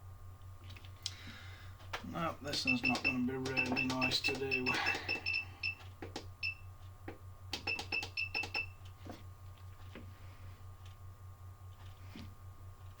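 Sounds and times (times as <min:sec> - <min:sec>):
electrical hum: 0:00.0 - 0:13.0
high electronic beeps: 0:02.6 - 0:05.8.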